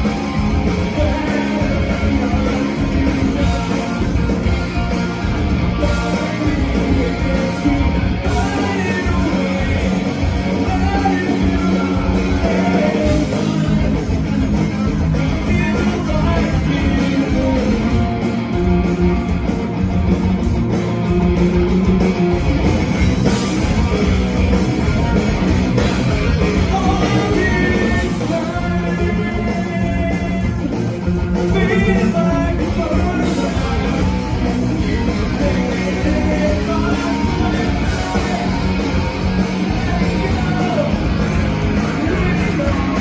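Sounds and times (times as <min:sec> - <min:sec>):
drums: 0:00.0 - 0:43.0
electric guitar: 0:00.0 - 0:43.0
person singing: 0:05.8 - 0:18.0, 0:26.4 - 0:43.0.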